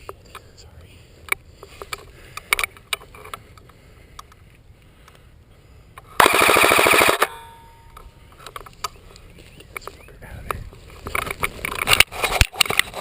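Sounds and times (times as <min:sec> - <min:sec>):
airsoft rifle full-auto burst: 0:06.2 - 0:07.4.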